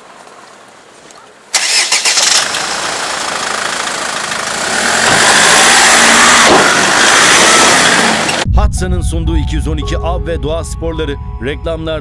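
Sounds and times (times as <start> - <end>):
vehicle engine running: 2.3 - 8.4.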